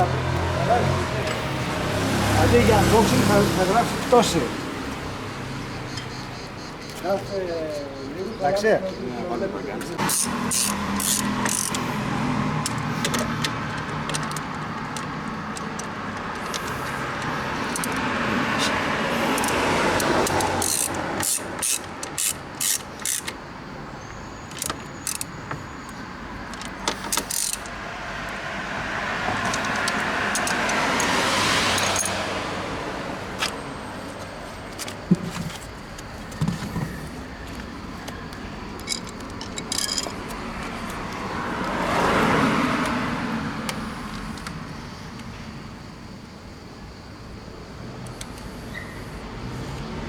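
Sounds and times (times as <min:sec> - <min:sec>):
vehicle passing: 0:00.0 - 0:22.1, 0:26.3 - 0:44.7, 0:47.8 - 0:50.0
road traffic: 0:00.0 - 0:50.0
sharp metallic clicks and clinks: 0:10.0 - 0:23.4, 0:24.5 - 0:27.8, 0:29.3 - 0:32.3, 0:38.8 - 0:41.8.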